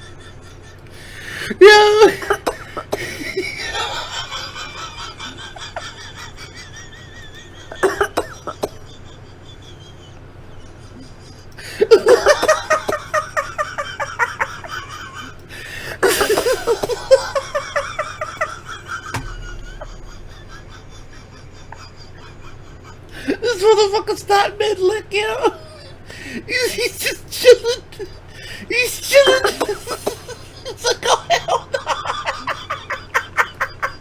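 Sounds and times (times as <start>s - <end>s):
person coughing and laughing: 7.8s - 8.8s, 15.6s - 21.2s, 29.2s - 31.1s.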